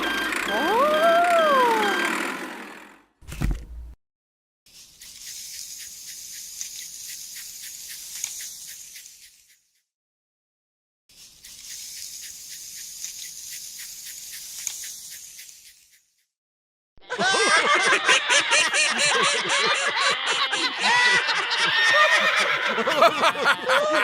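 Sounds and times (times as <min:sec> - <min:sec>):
high hiss with rattle: 0:04.8 - 0:09.7, 0:11.2 - 0:16.2.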